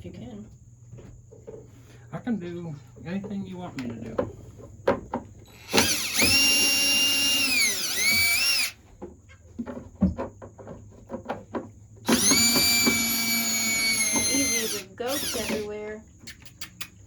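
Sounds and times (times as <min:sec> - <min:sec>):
power drill driving a screw: 0:05.5 - 0:08.8, 0:12.0 - 0:15.7.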